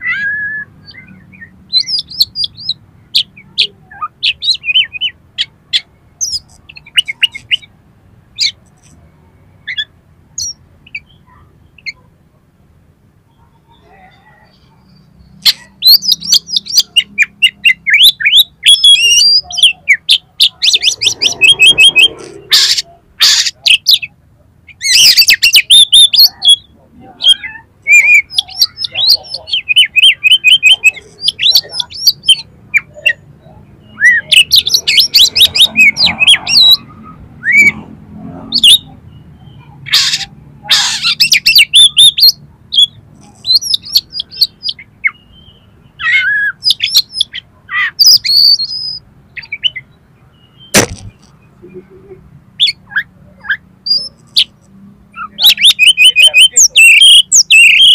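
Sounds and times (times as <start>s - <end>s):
bird singing chirps and whistles: 0.0s - 5.1s, 15.5s - 24.1s, 24.8s - 26.6s, 41.0s - 50.8s, 55.2s - 57.9s
harsh rasping bird calls: 0.0s - 9.0s, 13.4s - 57.9s.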